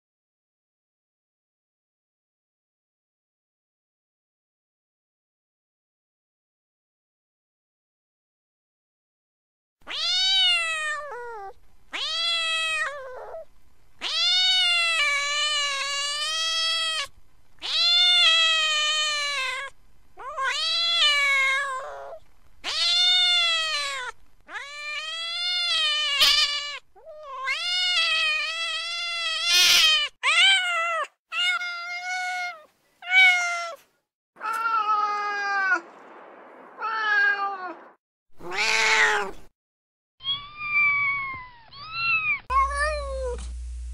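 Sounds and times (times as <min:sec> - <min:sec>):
cat meowing: 0:09.9 - 0:33.8, 0:34.4 - 0:35.8, 0:38.4 - 0:39.4, 0:40.2 - 0:43.4.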